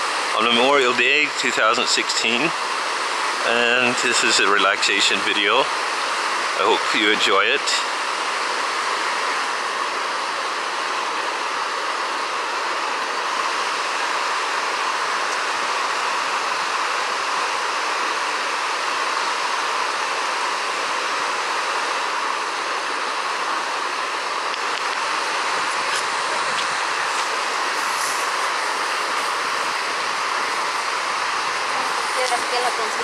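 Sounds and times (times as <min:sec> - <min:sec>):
creek rushing over rocks: 0:18.0 - 0:33.0.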